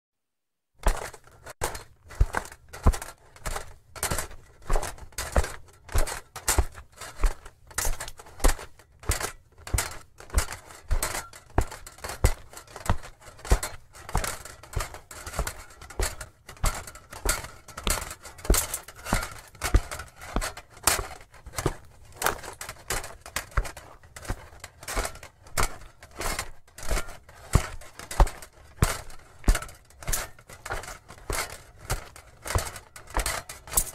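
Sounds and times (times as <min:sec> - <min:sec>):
armoured footsteps: 0:00.8 - 0:33.9.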